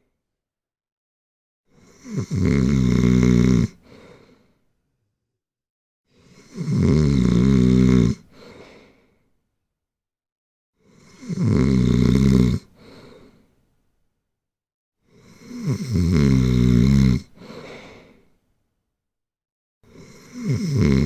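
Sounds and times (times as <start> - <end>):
loud snoring: 1.8 - 3.8, 6.2 - 8.3, 10.8 - 12.8, 15.1 - 17.4, 19.9 - 21.0.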